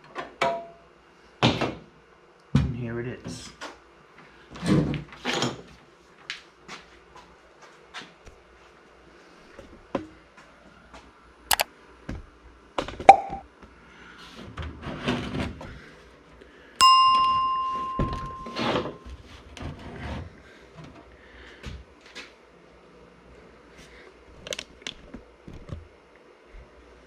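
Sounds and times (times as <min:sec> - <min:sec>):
bell-like ding: 0:16.8 - 0:19.1.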